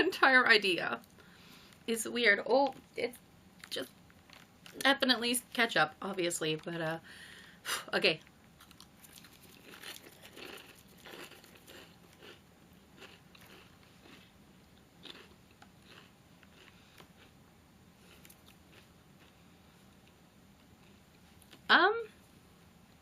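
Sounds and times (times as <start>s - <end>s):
person chewing crunchy chips: 8.6s - 17.4s, 18.0s - 20.2s.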